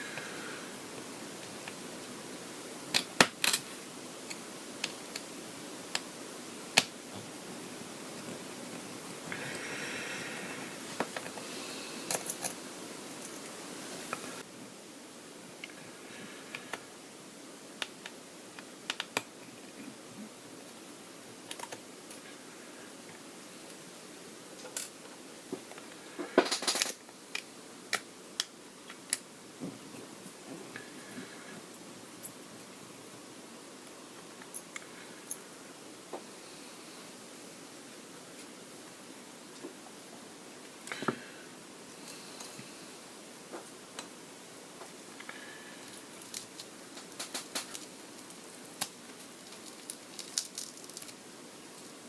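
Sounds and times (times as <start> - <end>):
tools prying clicks and crackles: 46.2 - 51.2.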